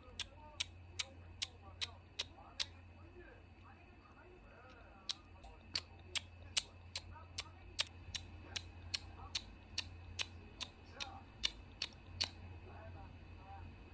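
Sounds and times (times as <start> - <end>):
sharp evenly spaced clicks: 0.0 - 2.8, 4.7 - 12.4.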